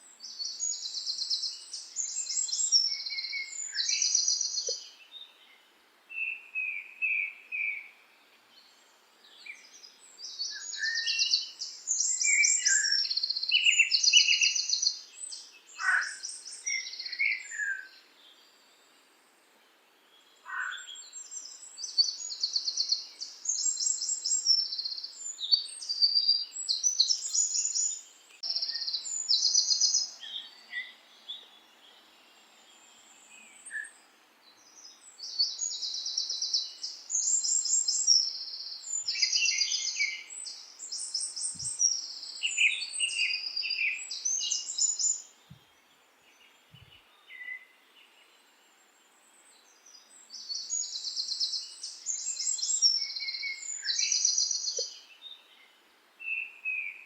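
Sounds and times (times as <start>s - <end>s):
faint background hiss: 0.0s - 57.0s
songbirds trilling: 0.2s - 5.6s, 8.6s - 18.8s, 20.1s - 48.6s, 49.4s - 57.0s.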